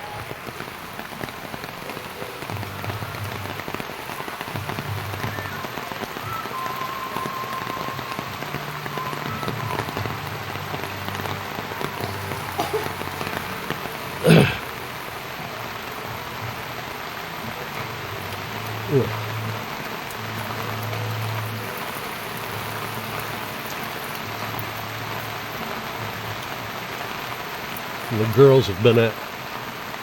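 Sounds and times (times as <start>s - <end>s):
heavy rain falling: 0.0s - 30.0s.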